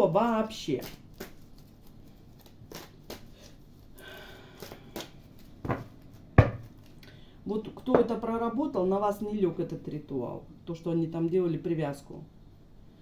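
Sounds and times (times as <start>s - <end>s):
card deck knocking on table: 5.7s - 6.7s.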